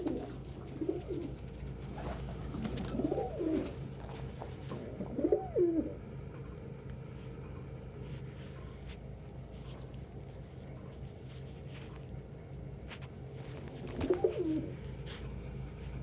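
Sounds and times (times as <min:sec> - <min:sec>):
pigeon cooing: 0:00.0 - 0:06.1, 0:13.7 - 0:14.9.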